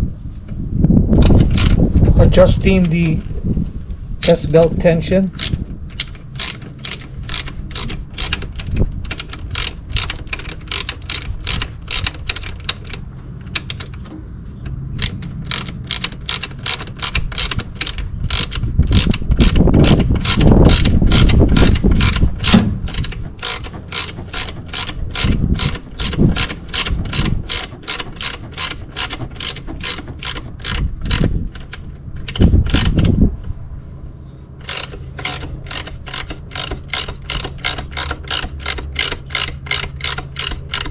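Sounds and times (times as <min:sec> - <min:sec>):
hand ratchet clicking: 0:05.4 - 0:14.1, 0:15.0 - 0:33.2, 0:34.6 - 0:40.9
low knocking and rubbing: 0:05.4 - 0:31.8.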